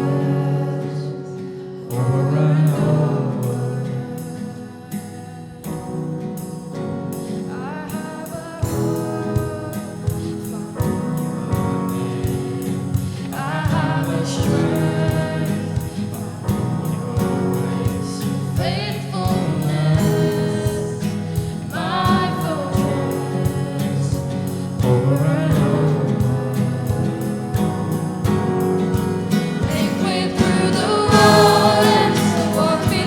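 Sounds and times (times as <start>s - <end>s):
band playing steady beat: 6.4s - 33.0s
person singing: 7.4s - 33.0s.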